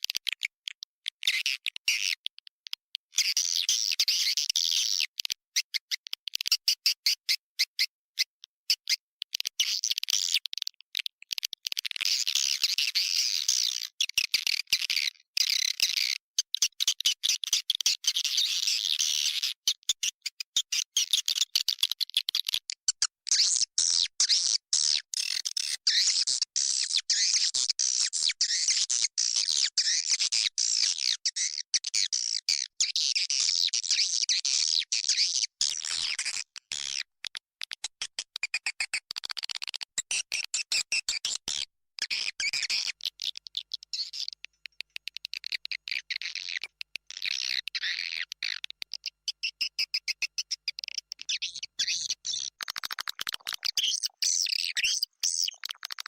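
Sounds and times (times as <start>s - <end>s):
high twittering bird chirps: 49.0s - 55.8s.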